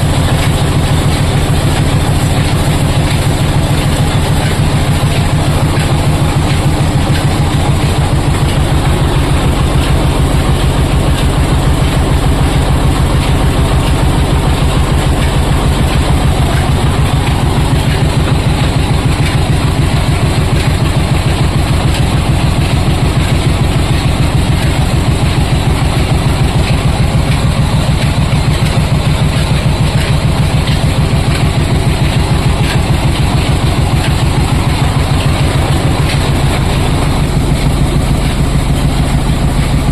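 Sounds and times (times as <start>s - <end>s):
oil expeller machine running: 0.0s - 39.9s.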